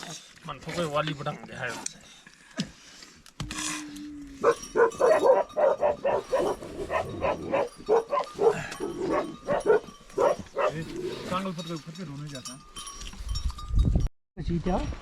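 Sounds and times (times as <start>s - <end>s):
dog barking rapidly: 4.4s - 10.8s.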